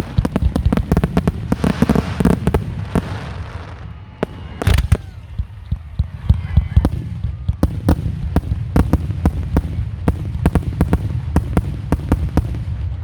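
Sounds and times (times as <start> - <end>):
fireworks bangs: 0.0 - 13.0.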